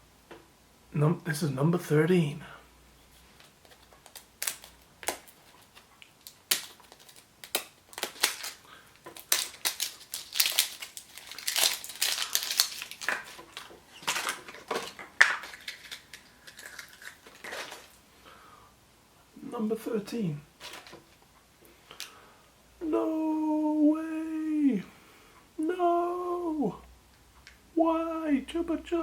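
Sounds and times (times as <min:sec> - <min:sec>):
wrapper crinkling: 0:03.2 - 0:18.0, 0:20.6 - 0:21.2.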